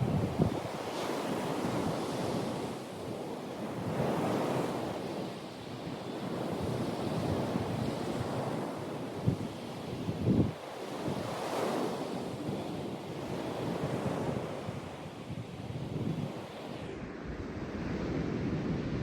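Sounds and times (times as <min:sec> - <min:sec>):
wind buffeting microphone: 0:00.0 - 0:02.5, 0:09.2 - 0:11.3, 0:13.3 - 0:19.0.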